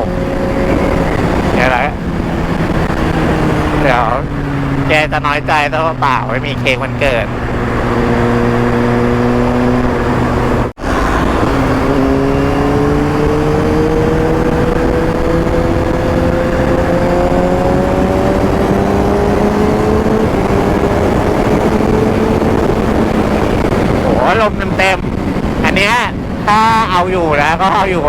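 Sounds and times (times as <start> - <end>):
motorcycle engine accelerating: 0.0 - 28.0
wind rush on microphone: 0.0 - 28.0.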